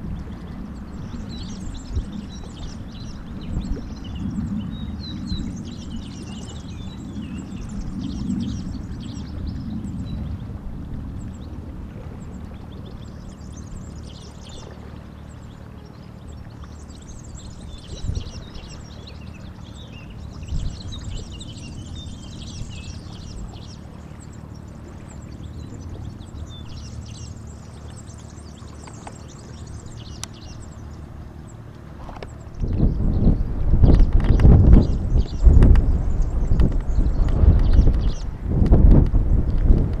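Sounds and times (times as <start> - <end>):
small birds chirping: 0.0 - 10.5, 12.2 - 38.4
low rumble: 0.0 - 40.0.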